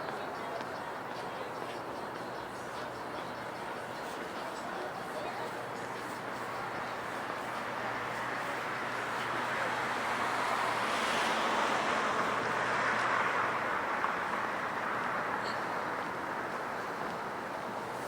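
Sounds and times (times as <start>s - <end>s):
street traffic rushing past: 0.0s - 18.0s.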